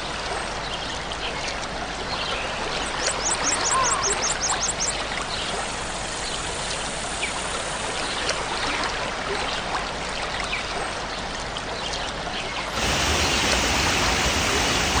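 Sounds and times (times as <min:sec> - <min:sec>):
small water splashes: 0:00.0 - 0:15.0
waterfall rushing water: 0:12.7 - 0:15.0.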